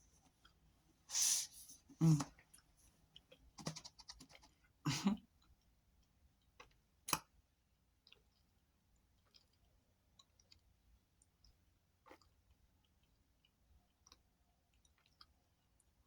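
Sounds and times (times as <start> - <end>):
mouth clicks and smacks: 0.4 - 5.2, 6.6 - 7.3
chewing crunchy snack: 2.0 - 16.0.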